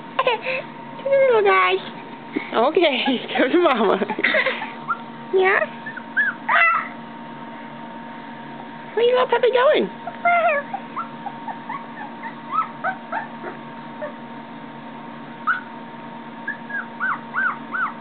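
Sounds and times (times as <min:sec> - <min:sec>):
puppy whimpering: 0:04.8 - 0:05.1, 0:05.7 - 0:07.0, 0:10.0 - 0:14.2, 0:15.4 - 0:15.8, 0:16.4 - 0:18.0.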